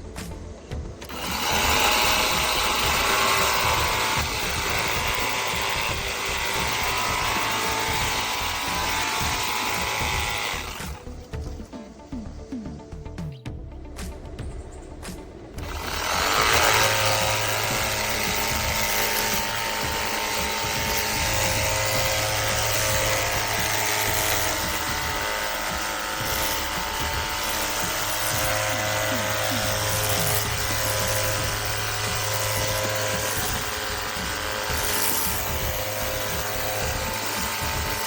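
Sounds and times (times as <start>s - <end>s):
pressure washer motor whine: 1.0s - 11.0s, 15.6s - 38.0s.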